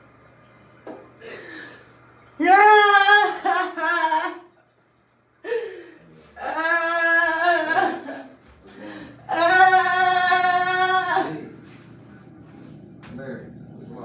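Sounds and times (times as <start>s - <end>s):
woman crying and wailing: 2.4s - 4.5s, 5.4s - 11.5s.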